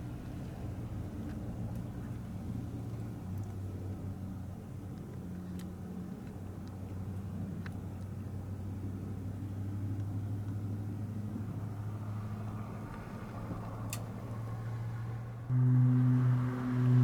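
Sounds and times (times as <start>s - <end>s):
low mechanical hum: 0.0s - 17.0s
sustained low musical tone: 15.5s - 17.0s.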